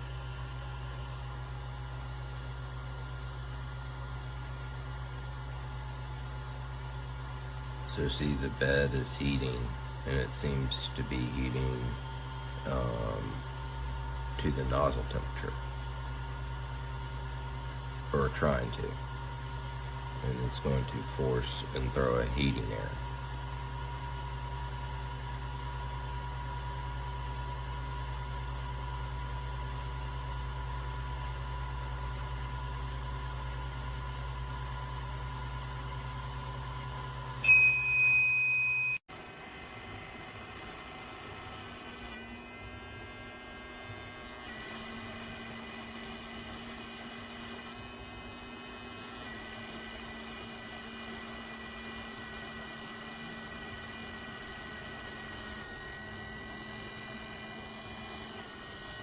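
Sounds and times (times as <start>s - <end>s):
loud high electronic beep: 37.4s - 39.0s.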